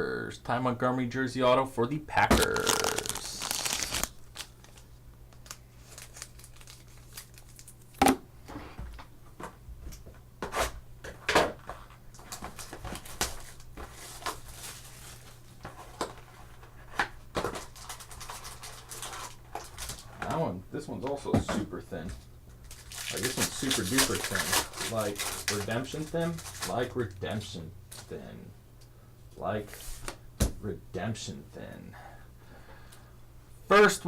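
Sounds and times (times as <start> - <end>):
wrapper crinkling and tearing: 2.3 - 8.0, 12.5 - 15.4, 17.4 - 20.1, 22.6 - 27.0.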